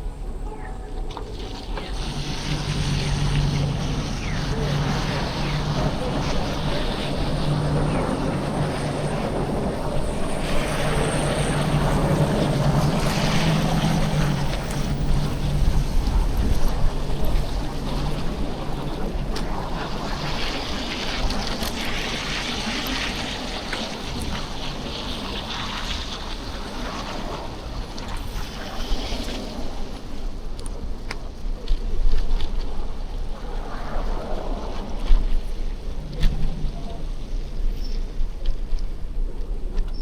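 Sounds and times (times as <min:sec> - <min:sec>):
traffic: 0:00.0 - 0:25.0
wind buffeting microphone: 0:00.0 - 0:40.0
tyres hissing on slush: 0:01.3 - 0:30.2.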